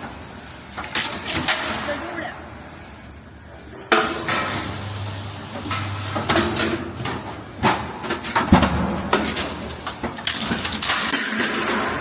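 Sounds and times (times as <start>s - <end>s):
machine clanks and knocks: 5.6s - 12.0s.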